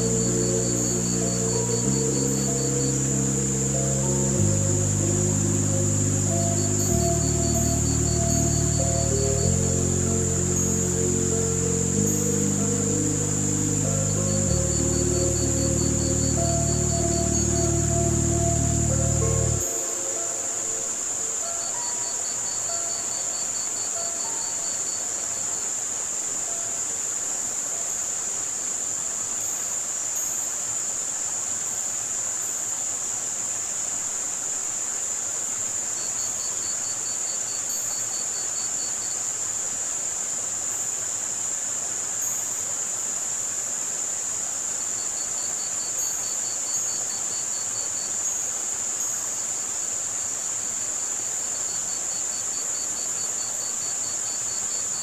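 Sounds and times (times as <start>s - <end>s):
soft music notes: 0.0s - 24.7s
high-pitched white noise: 0.0s - 31.2s
crickets trilling: 0.0s - 55.0s
running water hiss: 0.0s - 55.0s.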